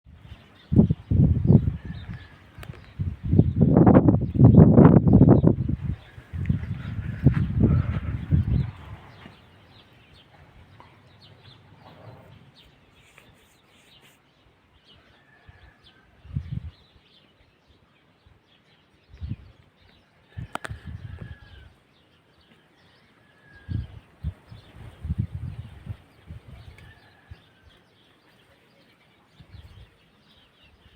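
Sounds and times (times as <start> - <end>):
wind buffeting microphone: 0.0 - 13.0, 15.3 - 17.2, 18.2 - 21.8, 23.5 - 27.8
birds chirping: 0.1 - 30.9.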